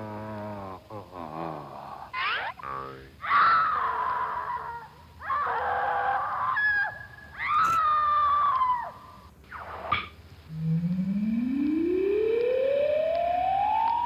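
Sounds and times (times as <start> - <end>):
high-pitched screaming cries: 2.1 - 2.6, 3.2 - 10.2.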